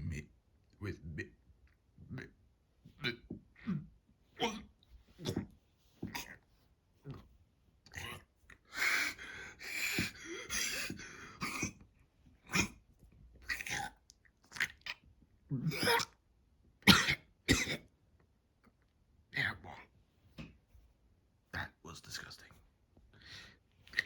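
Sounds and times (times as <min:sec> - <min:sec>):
cat character hacking and coughing: 0:09.8 - 0:11.8, 0:12.5 - 0:12.8, 0:15.6 - 0:16.1, 0:16.8 - 0:17.9.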